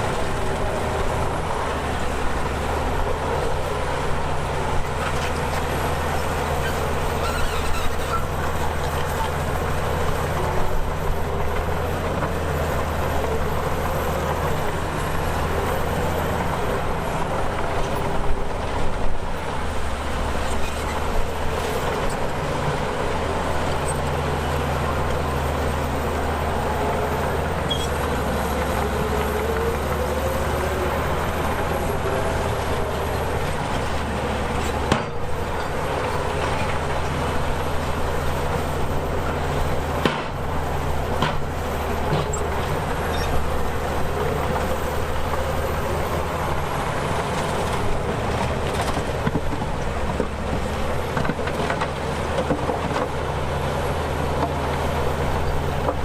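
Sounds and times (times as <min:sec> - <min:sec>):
bulldozer diesel engine running: 0:00.0 - 0:56.0
wavering squeal: 0:06.6 - 0:08.3, 0:27.6 - 0:28.0.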